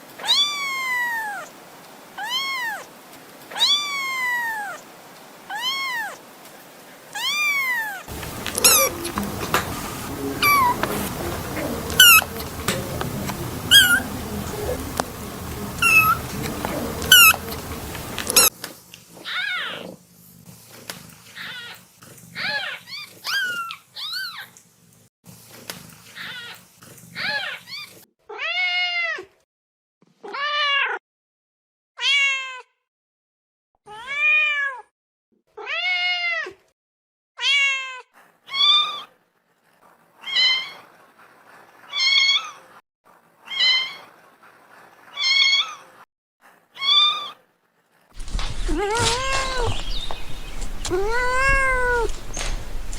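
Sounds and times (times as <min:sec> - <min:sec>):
kitten meowing: 0:02.2 - 0:02.8, 0:05.5 - 0:06.2, 0:07.2 - 0:08.0, 0:13.7 - 0:14.0, 0:48.2 - 0:52.9.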